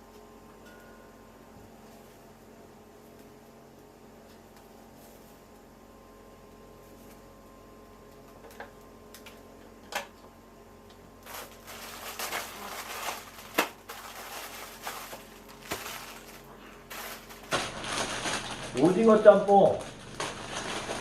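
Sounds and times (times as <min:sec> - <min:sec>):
plastic packet crinkling: 0:11.2 - 0:21.0.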